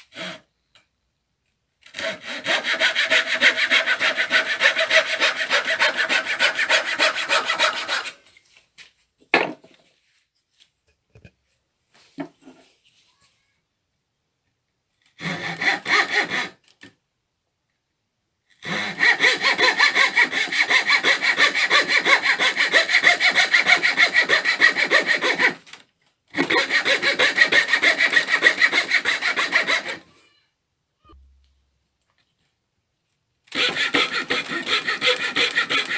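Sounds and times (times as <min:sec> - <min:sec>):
coping saw cutting wood: 0:02.0 - 0:08.2, 0:15.2 - 0:16.6, 0:18.6 - 0:25.6, 0:26.4 - 0:30.0, 0:33.5 - 0:35.9.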